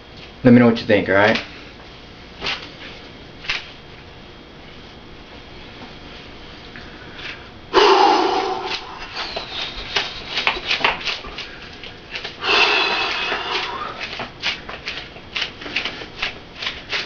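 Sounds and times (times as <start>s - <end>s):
loud whoosh rush: 7.8s - 9.3s.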